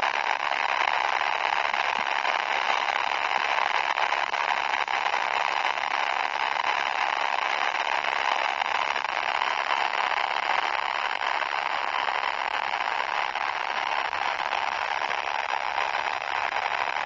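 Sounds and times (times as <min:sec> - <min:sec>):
harsh crackling distorted noise: 0:00.0 - 0:17.0.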